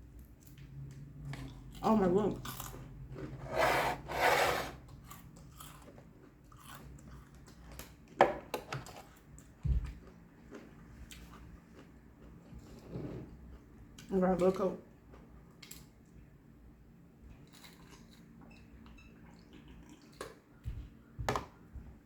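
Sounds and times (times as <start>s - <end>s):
chewing with mouth clicks: 4.9s - 8.2s, 8.8s - 12.8s, 17.4s - 21.0s.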